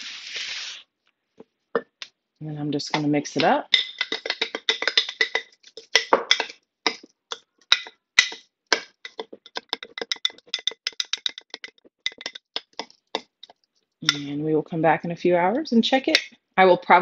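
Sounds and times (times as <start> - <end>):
utensil clinking against container: 2.9 - 14.3.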